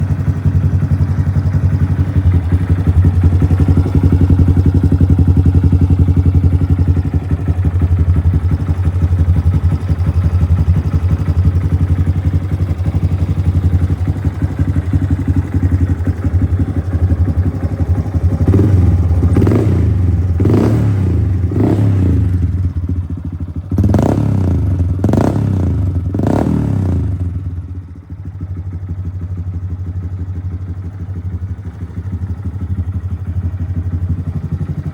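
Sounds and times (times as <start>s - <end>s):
motorcycle engine idling: 0.0s - 34.9s
engine revving: 18.4s - 22.6s, 23.7s - 27.4s.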